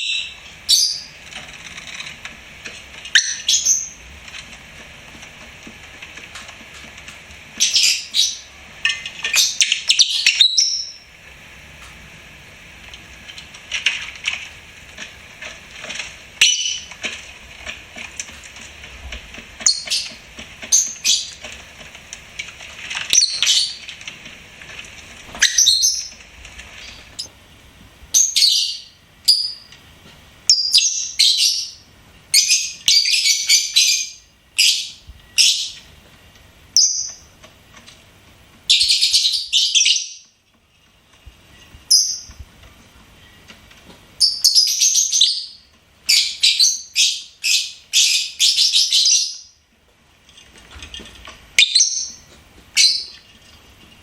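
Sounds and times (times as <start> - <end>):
lovebirds chirping and squawking: 0.0 - 1.2, 3.0 - 4.1, 7.6 - 8.5, 9.2 - 11.1, 16.4 - 16.9, 19.6 - 21.5, 23.0 - 23.9, 25.3 - 27.3, 28.1 - 29.7, 30.5 - 35.9, 36.8 - 37.3, 38.7 - 40.3, 41.6 - 42.4, 44.2 - 49.6, 51.5 - 53.3.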